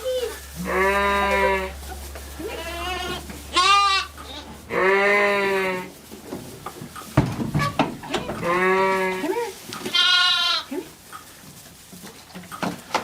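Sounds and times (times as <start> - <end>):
goat kids bleating: 0.0 - 6.0, 7.6 - 10.9.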